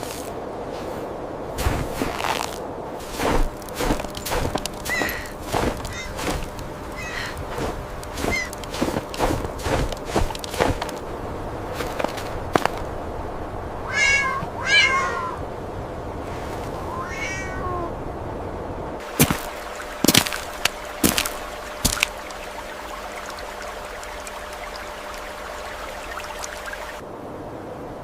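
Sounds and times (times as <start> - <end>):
cat meowing: 13.8 - 15.4, 16.9 - 18.0.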